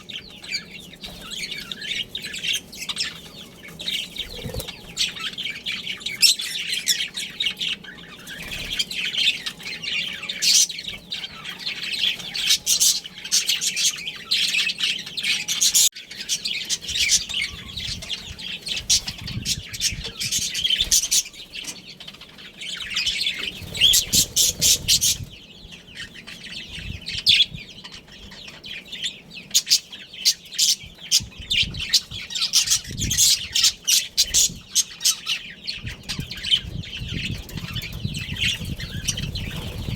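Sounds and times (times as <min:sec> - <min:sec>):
budgerigars chirping: 0:00.0 - 0:39.9.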